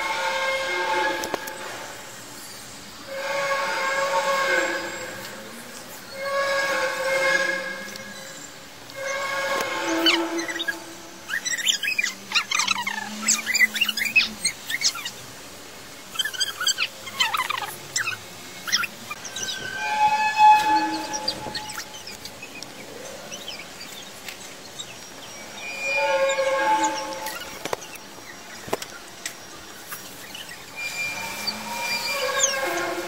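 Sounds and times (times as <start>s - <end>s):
horn-like tone with overtones: 0.0s - 1.9s, 3.1s - 11.3s, 19.4s - 21.9s, 30.7s - 33.0s.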